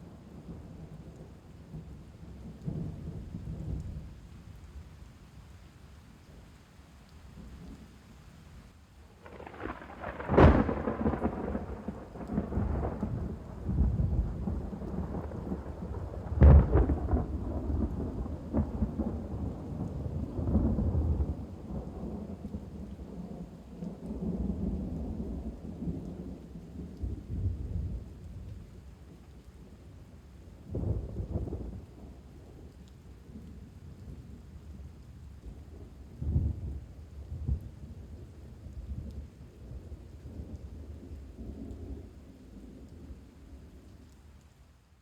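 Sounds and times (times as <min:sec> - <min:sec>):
rain: 0:00.0 - 0:45.0
thunderclap: 0:09.2 - 0:22.6
rolling thunder rumbles: 0:09.2 - 0:28.8, 0:30.6 - 0:43.8.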